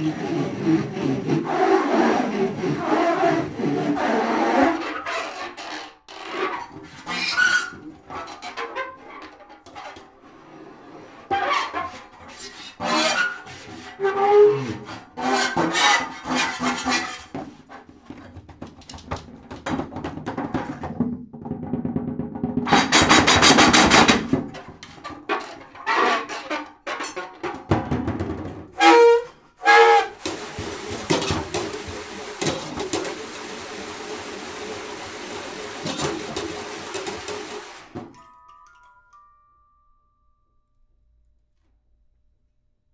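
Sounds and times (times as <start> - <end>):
drum kit scrapes and strokes: 0.0 - 5.0, 22.6 - 25.0, 28.8 - 38.0.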